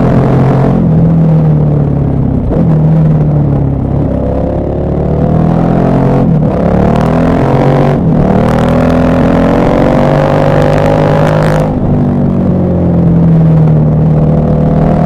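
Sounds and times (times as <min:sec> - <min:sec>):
motorcycle engine accelerating: 0:00.0 - 0:15.0.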